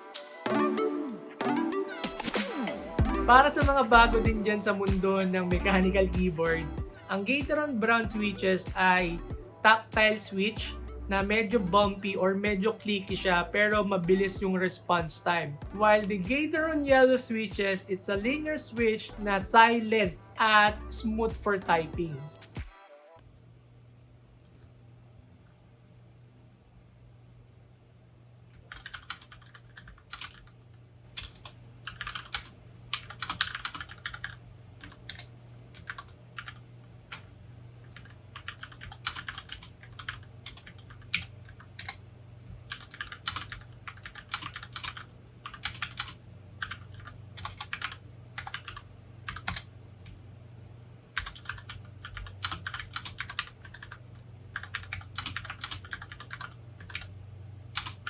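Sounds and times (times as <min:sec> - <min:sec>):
mechanical keyboard typing: 0:28.6 - 0:30.5, 0:31.2 - 0:42.0, 0:42.7 - 0:49.7, 0:51.2 - 0:54.0, 0:54.6 - 0:57.1, 0:57.8 - 0:58.0.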